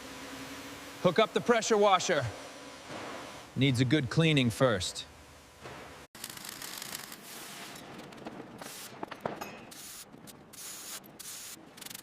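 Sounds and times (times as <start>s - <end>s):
pressure washer spraying water: 9.8s - 12.0s.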